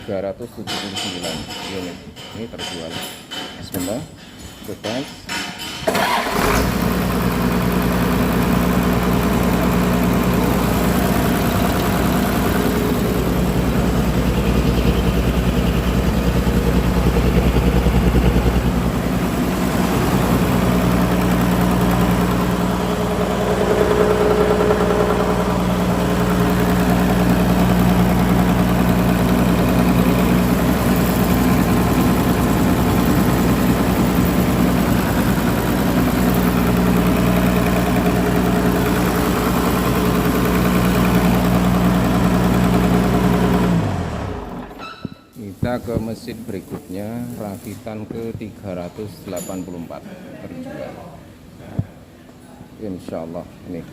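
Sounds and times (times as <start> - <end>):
diesel engine starting and running: 5.8 - 44.9.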